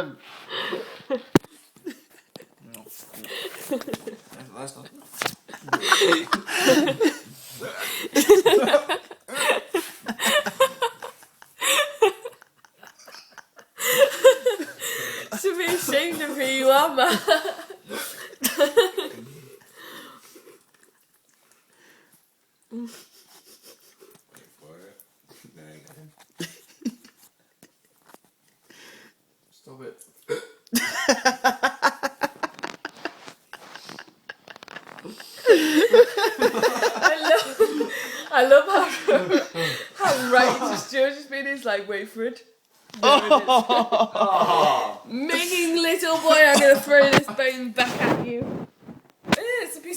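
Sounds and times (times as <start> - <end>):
people laughing: 5.5 - 16.4, 30.8 - 41.0, 43.0 - 45.4, 46.2 - 47.3
person laughing hard: 5.6 - 7.2.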